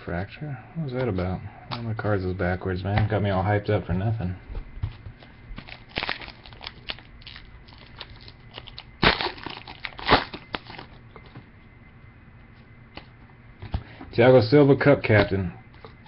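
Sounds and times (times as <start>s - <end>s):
foil wrapper crinkling: 5.6s - 11.0s.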